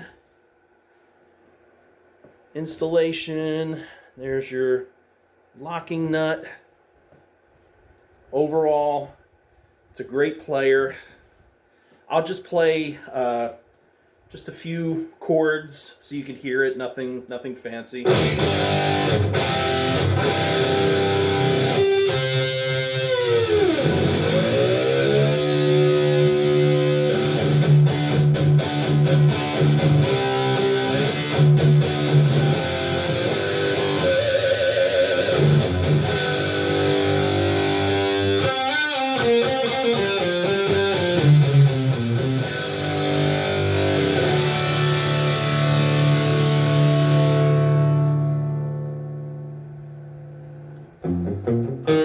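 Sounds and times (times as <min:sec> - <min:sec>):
electric guitar sustained chords: 0:18.1 - 0:52.0.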